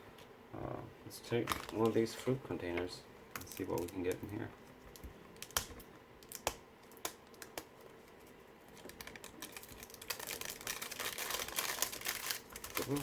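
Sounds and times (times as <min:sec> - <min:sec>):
plastic packaging crinkling: 0:03.4 - 0:13.0.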